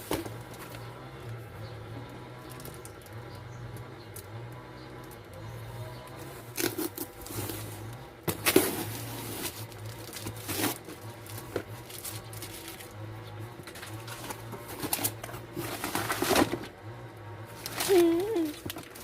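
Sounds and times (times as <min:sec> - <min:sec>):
gift packaging rustling and tearing: 0:06.5 - 0:16.7, 0:17.5 - 0:19.0.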